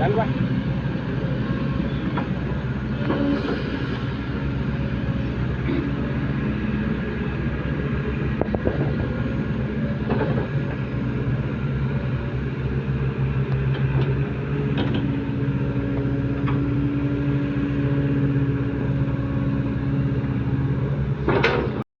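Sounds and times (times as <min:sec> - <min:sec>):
diesel engine under load: 0:00.0 - 0:21.8.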